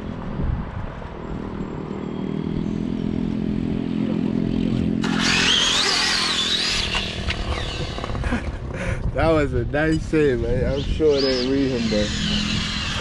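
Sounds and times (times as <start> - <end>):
electric motor whining: 5.0 - 8.4, 10.6 - 13.0.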